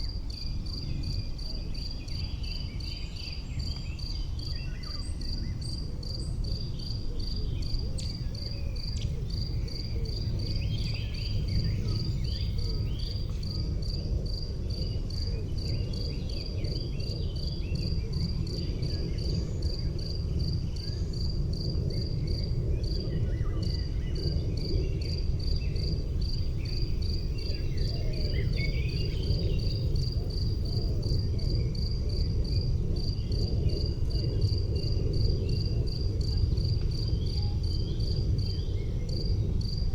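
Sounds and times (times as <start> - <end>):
insect chirping: 0.0 - 39.9.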